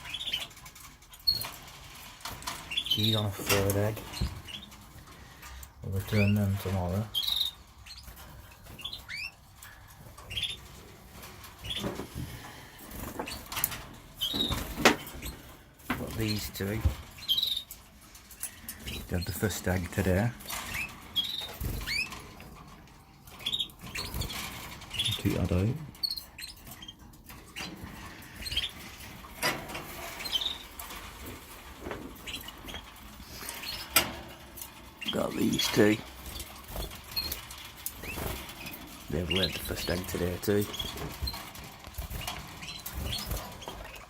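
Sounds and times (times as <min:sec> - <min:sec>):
birds rustling in cages: 0:00.0 - 0:44.0
canaries chirping: 0:00.0 - 0:44.0.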